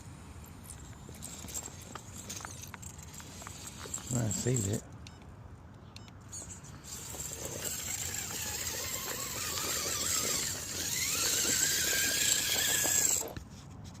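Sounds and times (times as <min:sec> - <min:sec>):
electric motor whining: 0:06.4 - 0:13.4.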